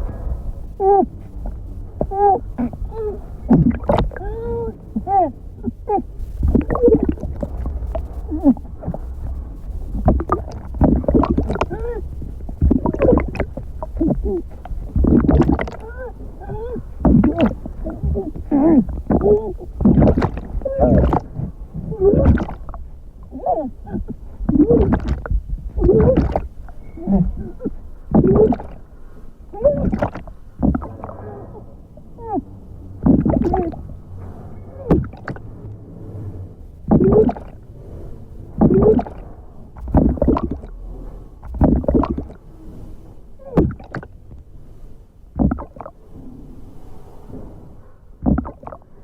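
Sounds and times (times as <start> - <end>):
woman's gurgling drowning cries: 0.8 - 1.2, 2.0 - 7.2, 11.0 - 22.6, 23.3 - 25.0.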